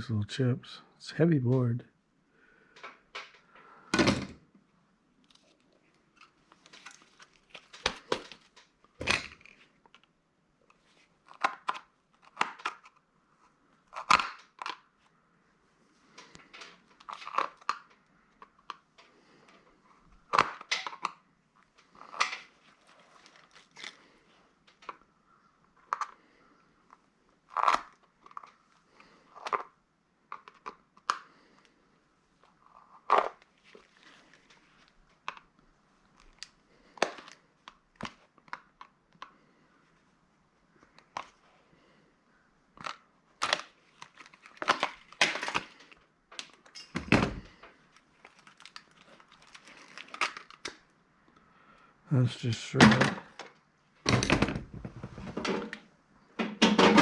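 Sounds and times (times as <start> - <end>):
plastic device being taken apart: 5.2 - 15.1, 16.1 - 25.1, 25.7 - 31.7, 32.4 - 39.5, 40.8 - 41.5, 42.8 - 50.9, 52.7 - 57.0.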